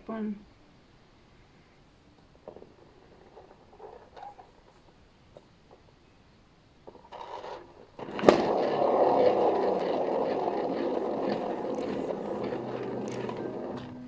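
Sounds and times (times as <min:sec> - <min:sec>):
spinner rolling rumble with ticks: 0:02.2 - 0:14.0
paint spinner knock: 0:06.8 - 0:14.0.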